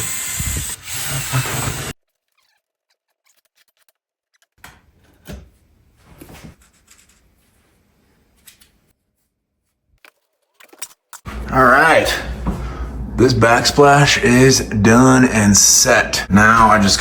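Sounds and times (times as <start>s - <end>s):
loud noise: 11.3s - 17.0s.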